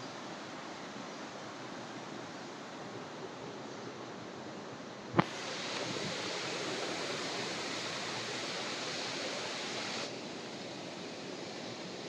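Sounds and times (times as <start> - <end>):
waterfall rushing: 5.2 - 12.0.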